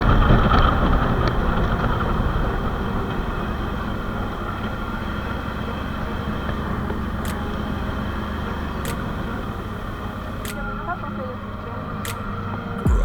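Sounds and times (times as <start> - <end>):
vehicle engine rumble: 0.0 - 13.0.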